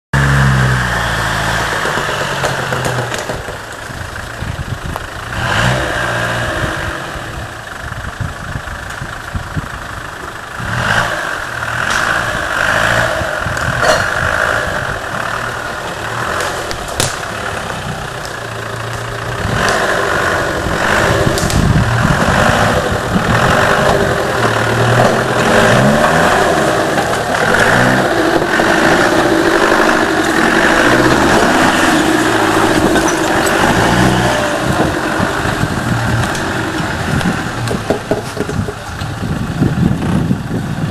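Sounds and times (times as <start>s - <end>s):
engine revving: 0.1s - 3.8s, 5.2s - 7.7s, 10.3s - 40.9s
knocks and clatter: 1.4s - 5.0s, 20.9s - 39.2s.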